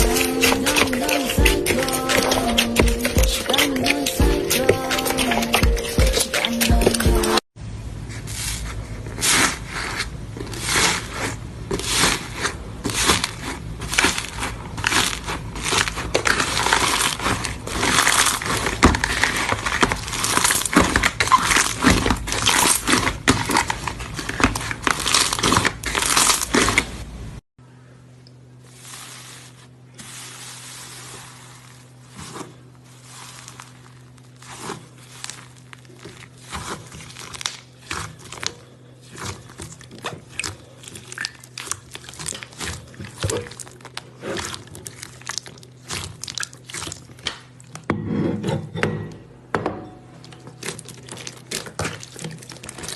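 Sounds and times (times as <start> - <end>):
slime crackling when squeezed: 11.8 - 26.9, 28.8 - 47.3.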